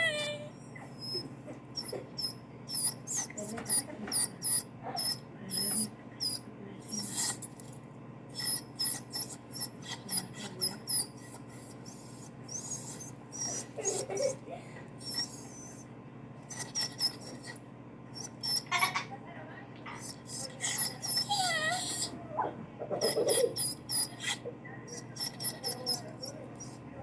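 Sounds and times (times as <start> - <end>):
dog whining: 0.0 - 7.6, 8.3 - 15.9, 16.5 - 17.6, 18.2 - 19.0, 19.9 - 26.8.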